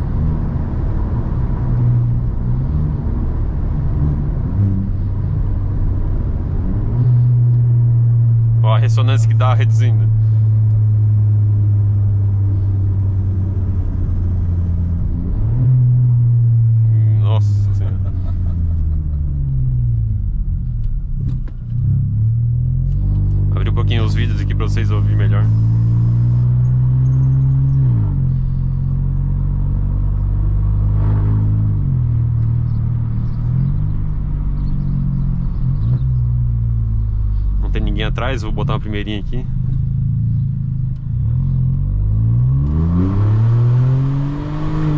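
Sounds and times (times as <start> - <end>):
loud low exhaust drone: 6.6 - 18.9.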